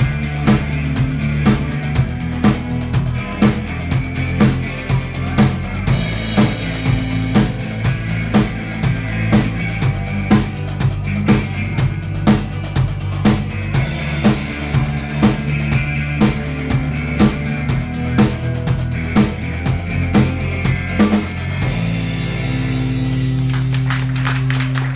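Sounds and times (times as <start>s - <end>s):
drum kit beat: 0.0s - 24.9s
rock band playing: 0.0s - 24.9s.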